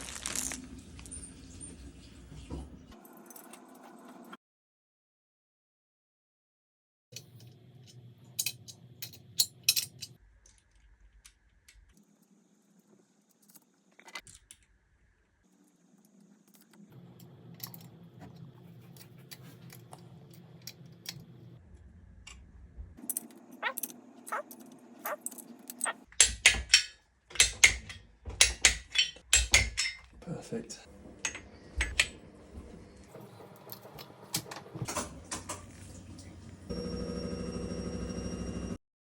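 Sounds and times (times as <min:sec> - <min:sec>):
metal parts and tools clinking: 0:07.2 - 0:10.2, 0:23.0 - 0:30.1.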